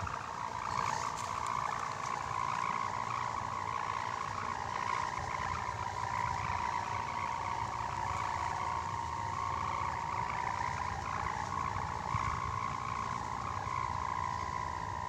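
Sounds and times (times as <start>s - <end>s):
kite hummer droning: 0.0s - 15.0s.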